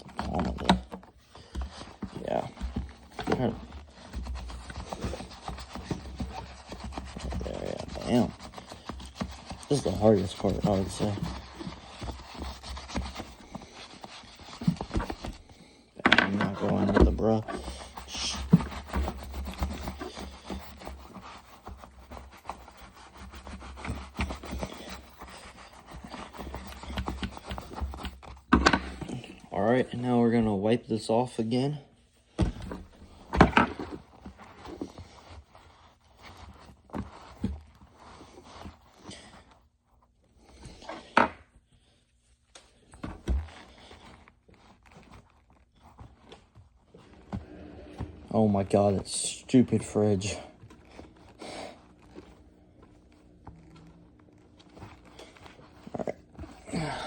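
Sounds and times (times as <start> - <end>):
dull thumps: 0.0 - 29.5, 32.3 - 39.6
brush scrubbing leather: 0.0 - 30.5, 32.3 - 41.6, 42.8 - 57.0.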